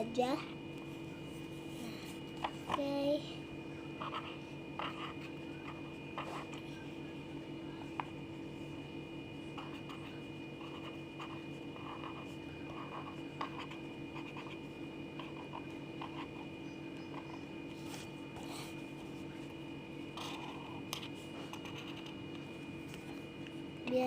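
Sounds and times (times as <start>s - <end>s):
faint hum: 0.0s - 24.0s
marker scratching on paper: 4.0s - 7.0s, 9.5s - 16.4s, 20.2s - 22.2s.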